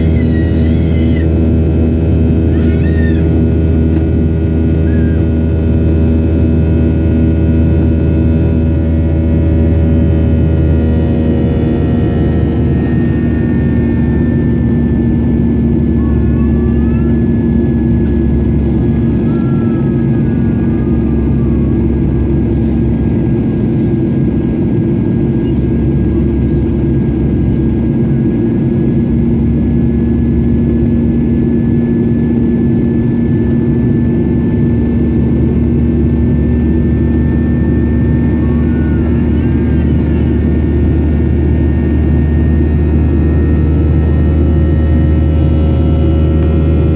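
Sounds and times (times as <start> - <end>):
deep hum: 0.0 - 46.9
jet engines rushing: 0.0 - 46.9.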